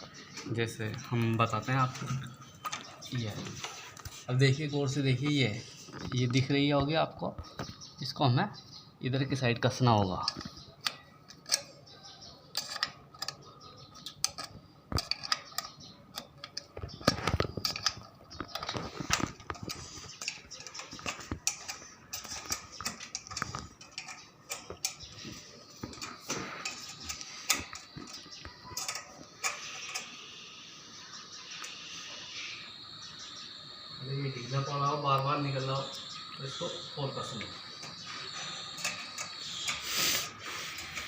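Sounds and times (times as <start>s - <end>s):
allen key tightening screw: 10.2s - 30.2s
metallic clicks and clinks: 10.2s - 30.2s, 37.1s - 41.0s.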